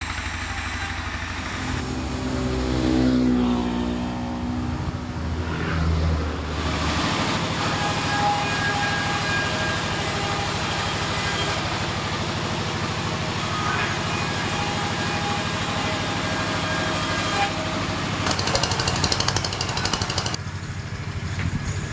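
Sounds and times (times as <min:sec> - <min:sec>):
machine engine running: 0:18.2 - 0:20.4.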